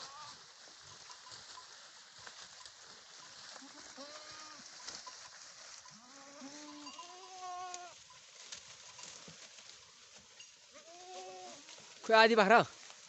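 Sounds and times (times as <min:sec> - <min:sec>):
goats bleating: 0:00.0 - 0:00.4, 0:03.6 - 0:04.7, 0:05.9 - 0:08.0, 0:10.7 - 0:11.7.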